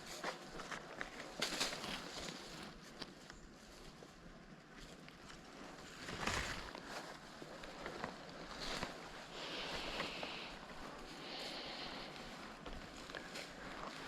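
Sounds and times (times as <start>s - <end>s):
twigs cracking and snapping: 0.0s - 3.8s, 4.7s - 10.8s
footsteps rustling through leaves: 0.0s - 14.0s.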